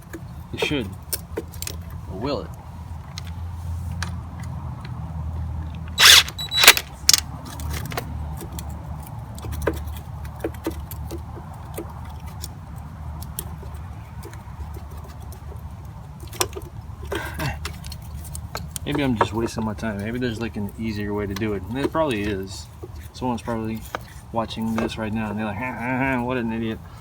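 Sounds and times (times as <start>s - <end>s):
metal tools clinking: 5.9s - 8.0s.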